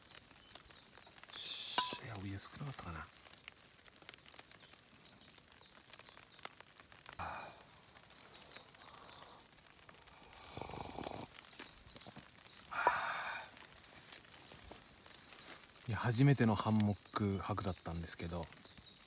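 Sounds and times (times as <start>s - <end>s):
small bird calling: 0.0s - 3.3s, 7.1s - 13.6s.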